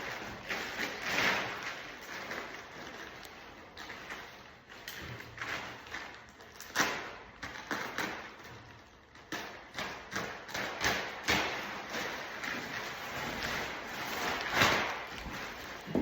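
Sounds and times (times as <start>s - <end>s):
tools knocking and clattering: 15.2s - 16.0s.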